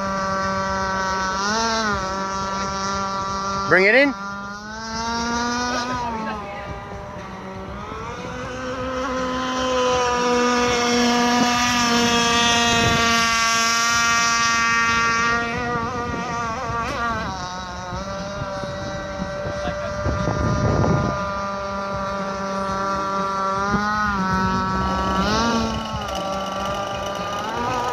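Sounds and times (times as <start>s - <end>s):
boat engine running: 0.0s - 27.9s
rush of noise: 22.6s - 27.9s.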